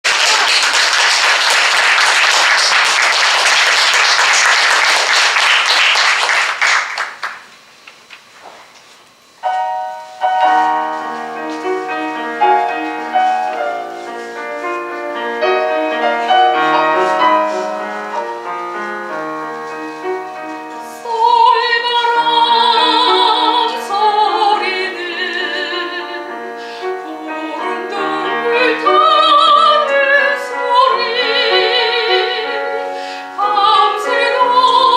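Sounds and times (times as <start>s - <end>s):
audience applauding: 0.0s - 7.6s
piano: 0.0s - 7.8s, 9.1s - 34.9s
soprano singing with vibrato: 20.7s - 34.9s.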